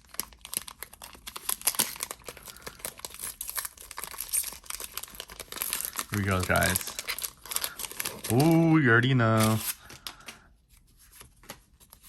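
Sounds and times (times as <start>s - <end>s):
foil wrapper crinkling and tearing: 0.0s - 10.3s.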